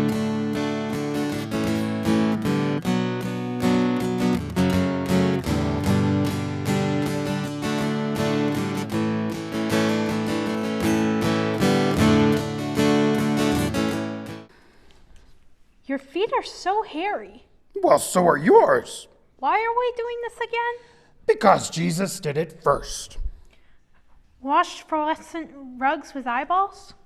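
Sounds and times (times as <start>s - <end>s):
strummed acoustic guitar: 0.0s - 14.5s.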